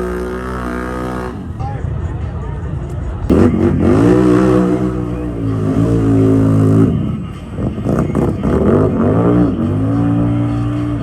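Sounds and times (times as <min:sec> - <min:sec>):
atv engine revving: 0:00.0 - 0:01.6, 0:03.3 - 0:11.0.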